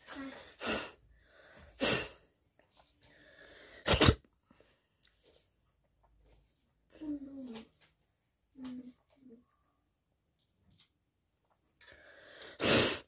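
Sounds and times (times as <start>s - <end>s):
person sneezing: 1.8s - 2.2s, 3.8s - 4.3s, 12.6s - 13.0s.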